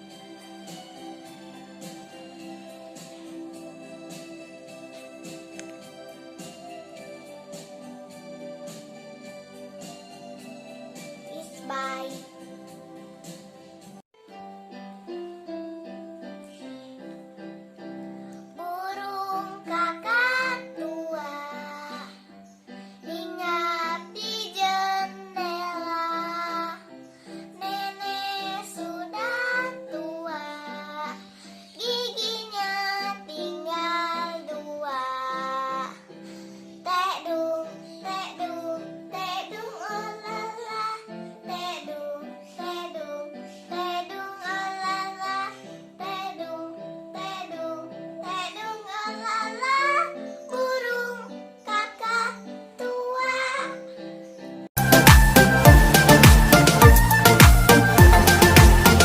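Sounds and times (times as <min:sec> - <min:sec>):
instrumental accompaniment: 0:00.0 - 0:16.6, 0:54.8 - 0:59.0
child singing: 0:11.0 - 0:12.5, 0:18.6 - 0:22.3, 0:23.0 - 0:36.1, 0:36.8 - 0:53.9.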